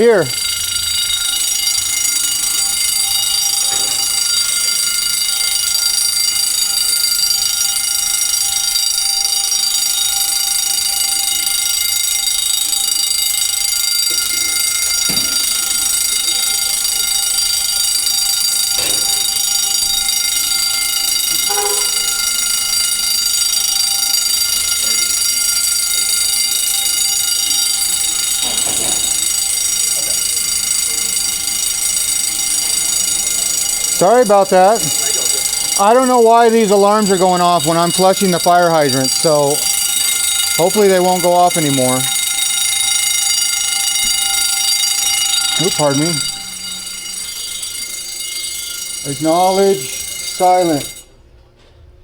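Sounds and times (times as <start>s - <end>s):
fire alarm sounding: 0.0s - 51.4s.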